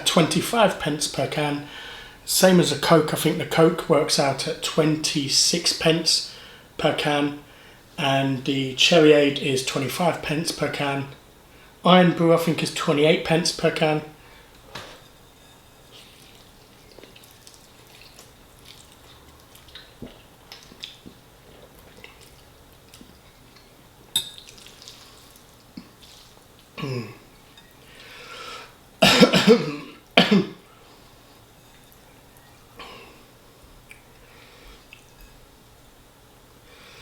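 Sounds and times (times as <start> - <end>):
man coughing: 26.8 - 27.2, 29.0 - 30.6.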